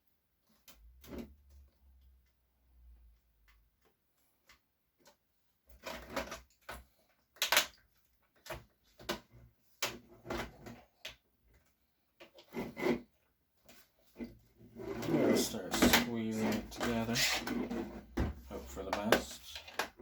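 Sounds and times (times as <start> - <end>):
plastic parts clicking and knocking: 3.0 - 20.0
plastic rubbing scrapes: 12.2 - 20.0.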